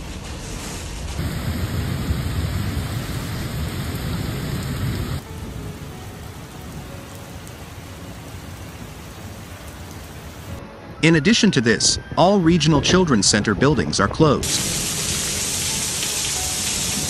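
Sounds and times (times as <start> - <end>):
heavy rain: 0.0 - 10.6, 14.0 - 17.0
thunder rumbling: 0.0 - 10.6, 11.8 - 17.0.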